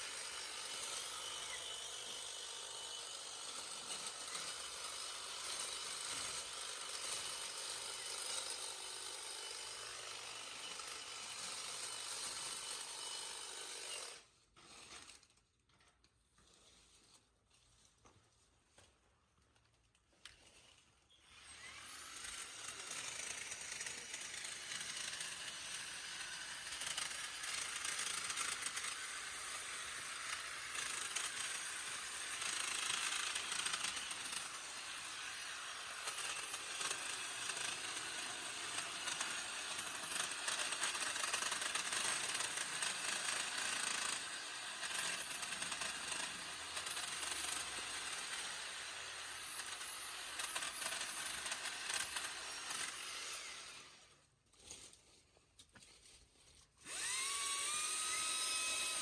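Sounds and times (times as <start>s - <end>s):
hedge trimmer cutting branches: 21.4s - 55.0s, 56.8s - 59.0s.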